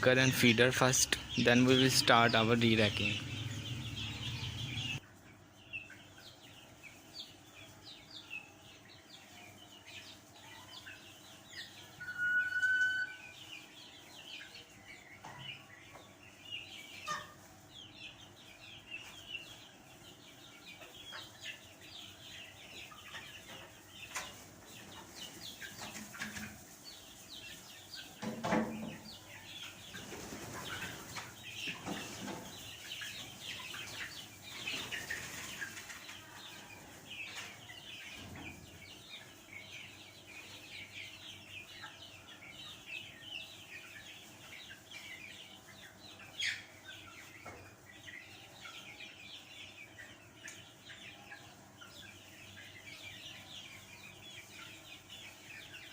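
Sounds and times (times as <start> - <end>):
chickens peeping and clucking: 0.0 - 55.9
high-pitched squeak: 12.0 - 13.3.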